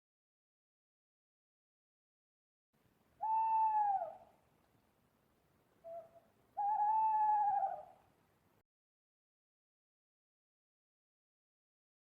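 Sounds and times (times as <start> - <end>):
owl hooting: 3.2 - 4.4, 5.8 - 8.0.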